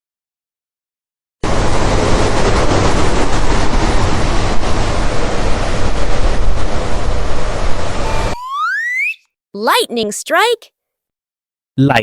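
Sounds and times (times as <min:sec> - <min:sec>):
rushing storm wind: 0:01.4 - 0:08.4.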